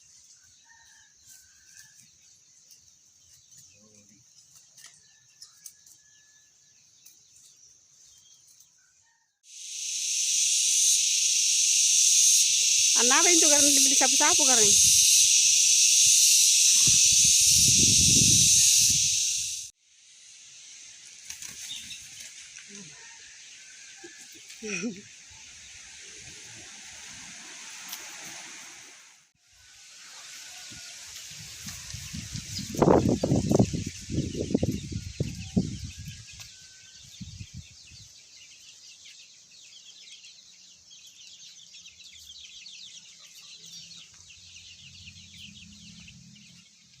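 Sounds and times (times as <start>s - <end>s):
loud steady hiss: 9.5s - 22.7s, 24.6s - 35.6s
high chirping chatter: 9.8s - 19.7s, 24.0s - 26.0s, 30.7s - 47.0s.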